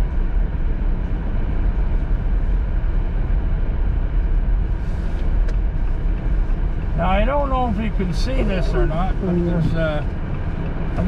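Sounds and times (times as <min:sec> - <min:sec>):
engine and tyre rumble in car: 0:00.0 - 0:11.0.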